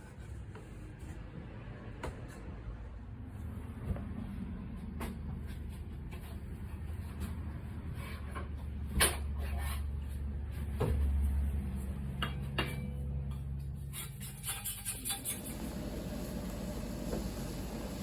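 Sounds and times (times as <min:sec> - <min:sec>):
kitchen equipment humming: 0:14.8 - 0:18.0.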